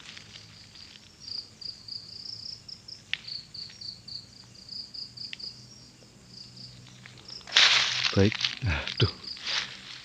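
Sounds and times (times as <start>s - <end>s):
crickets chirping: 0.0s - 10.0s.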